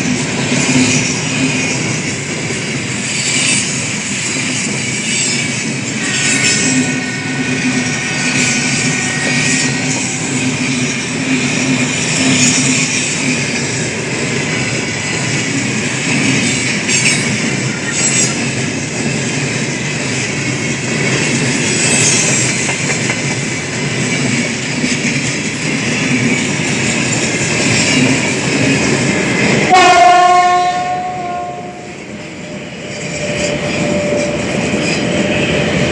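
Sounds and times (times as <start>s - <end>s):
freight train rolling past: 0.0s - 35.9s
locomotive horn blast: 29.7s - 32.0s.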